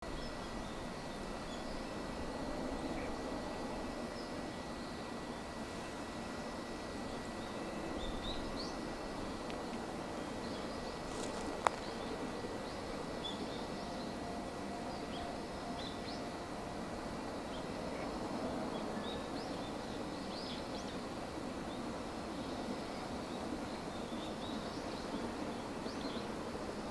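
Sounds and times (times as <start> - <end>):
outdoor background noise: 0.0 - 26.9
small birds chirping: 9.6 - 14.2.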